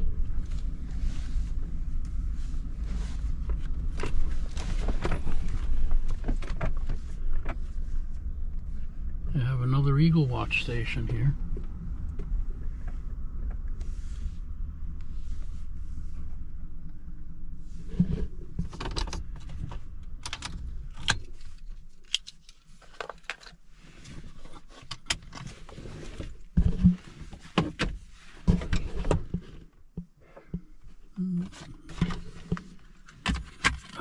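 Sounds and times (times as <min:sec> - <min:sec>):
clicks and rattles inside car: 0:00.0 - 0:14.0, 0:17.7 - 0:34.0
car engine idling: 0:00.0 - 0:22.2.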